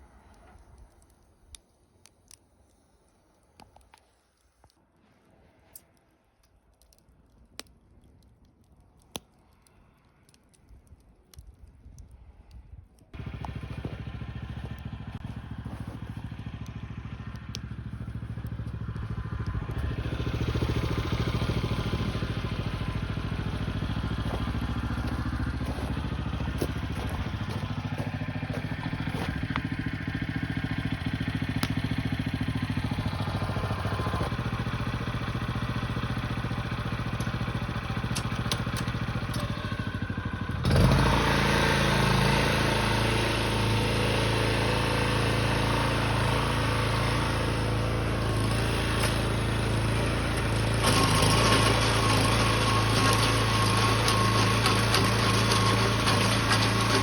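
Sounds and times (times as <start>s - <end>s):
snow blower engine running: 13.2s - 57.0s.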